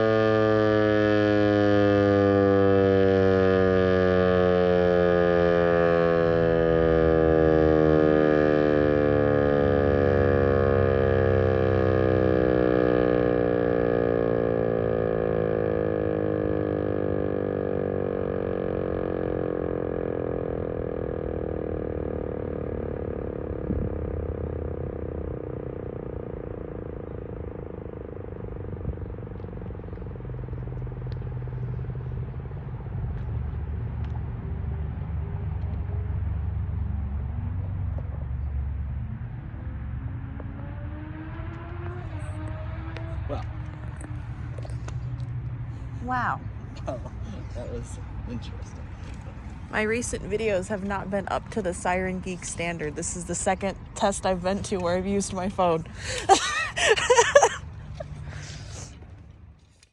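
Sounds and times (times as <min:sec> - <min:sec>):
low traffic rumble: 0:00.0 - 0:59.9
tornado siren winding down: 0:00.0 - 0:59.9
vehicles passing: 0:00.0 - 0:59.9.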